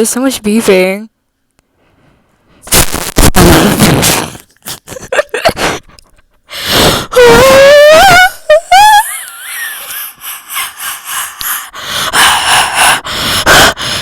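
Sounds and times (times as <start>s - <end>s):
distorted bursts of harsh noise: 2.7s - 4.4s.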